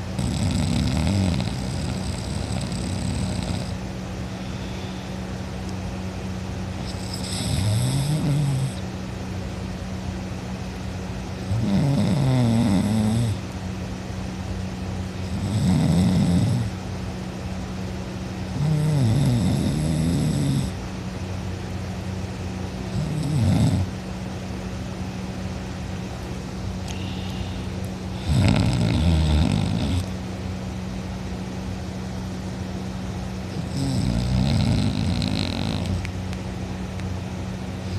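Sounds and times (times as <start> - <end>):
steady low hum: 0.0 - 37.9
person snoring loudly: 0.2 - 3.8, 6.9 - 8.8, 11.5 - 13.4, 15.3 - 16.7, 18.6 - 20.8, 23.0 - 23.9, 28.1 - 30.1, 33.6 - 36.0.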